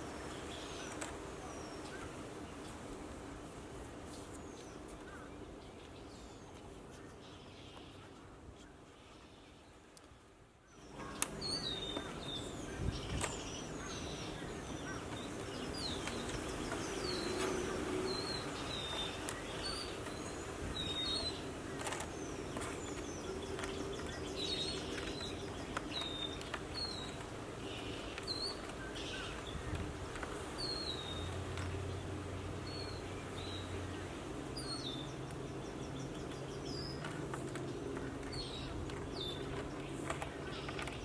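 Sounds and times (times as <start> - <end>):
bird chirping: 10.7 - 41.0.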